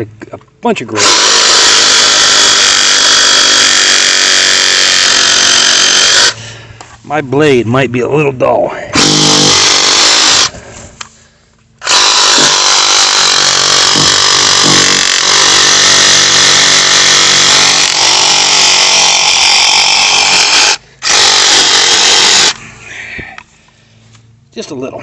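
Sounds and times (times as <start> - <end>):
reciprocating saw cutting stems: 1.0 - 6.4, 9.0 - 10.6, 11.8 - 22.6.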